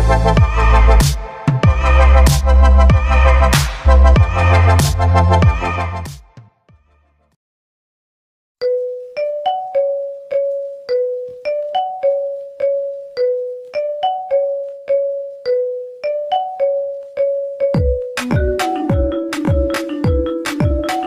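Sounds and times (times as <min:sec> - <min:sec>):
bell-like ringtone melody: 0:08.6 - 0:21.0.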